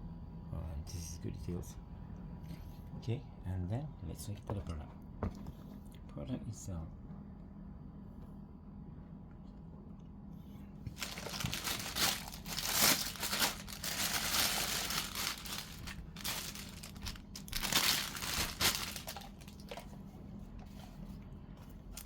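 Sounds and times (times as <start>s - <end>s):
packaging crinkling and rustling: 10.9s - 20.0s, 21.8s - 22.0s.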